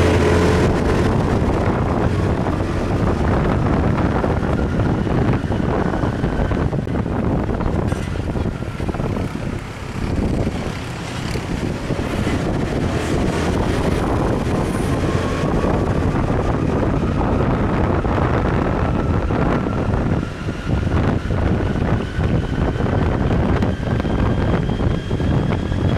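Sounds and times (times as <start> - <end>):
motorbike engine: 0.0 - 17.9
surrounding traffic: 0.0 - 25.9
wind buffeting microphone: 0.0 - 25.9.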